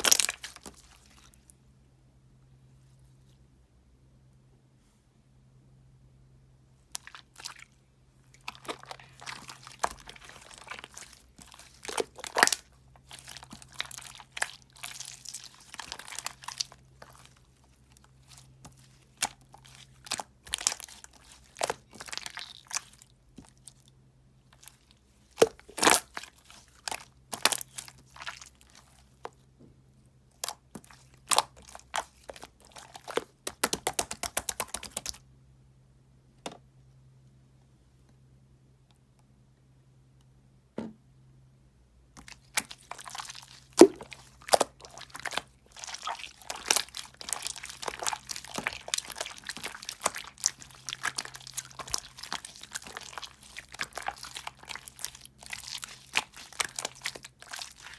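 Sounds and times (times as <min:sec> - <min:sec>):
gel crunching and crackling: 0:00.0 - 0:01.6, 0:06.9 - 0:29.5, 0:30.3 - 0:35.2, 0:42.1 - 0:57.9.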